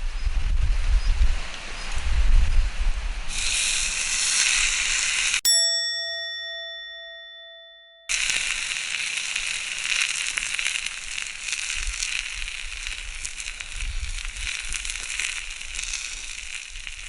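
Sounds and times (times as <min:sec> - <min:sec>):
steady hiss: 0:00.0 - 0:05.4, 0:08.1 - 0:17.0
campfire crackling and popping: 0:03.3 - 0:05.5, 0:08.1 - 0:17.0.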